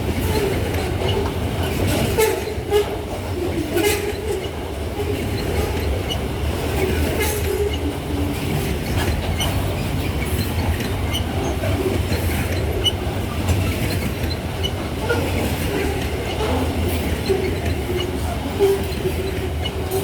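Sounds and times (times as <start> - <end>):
freight train rumbling past: 0.0 - 20.0
wheels clicking and squeaking on rails: 0.0 - 20.0.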